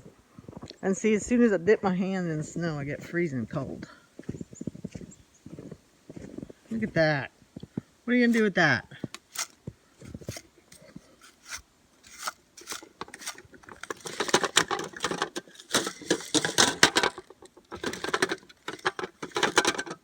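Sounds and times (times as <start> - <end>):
clattering and rattling knocks: 13.0 - 20.0.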